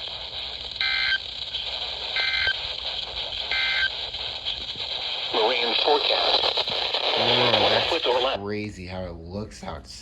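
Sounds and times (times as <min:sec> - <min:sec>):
radio receiver hiss: 0:00.0 - 0:08.5
warbling digital data tones: 0:00.4 - 0:04.6.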